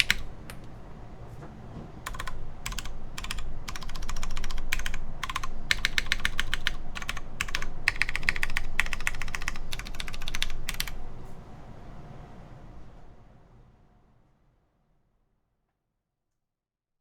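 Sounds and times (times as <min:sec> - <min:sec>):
typing on mechanical keyboard: 0:00.0 - 0:00.7, 0:02.0 - 0:11.0.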